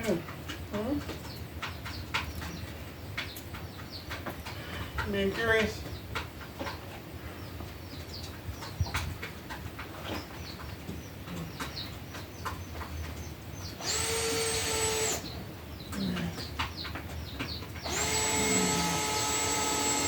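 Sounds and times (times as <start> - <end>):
chicks peeping: 0.0 - 20.0
power drill running: 13.8 - 15.3, 17.8 - 20.0.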